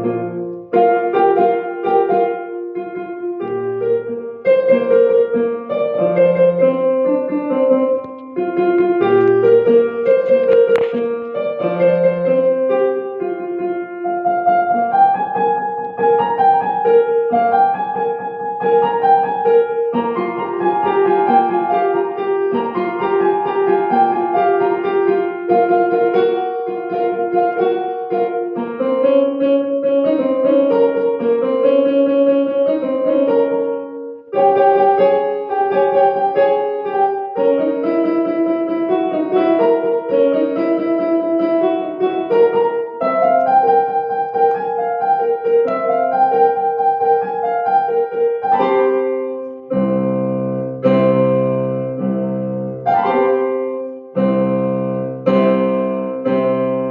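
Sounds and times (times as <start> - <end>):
lively solo piano piece: 0.0 - 56.9.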